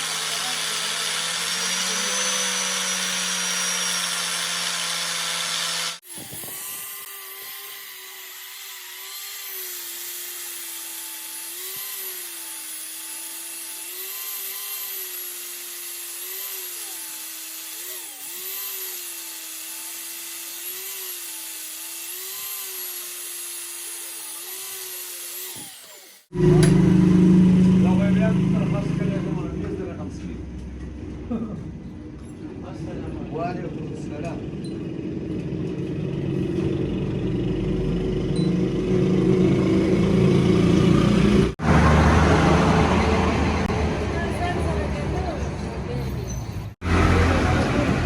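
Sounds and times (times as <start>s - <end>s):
power tool motor running: 0.0s - 29.2s, 37.9s - 45.2s, 46.7s - 48.0s.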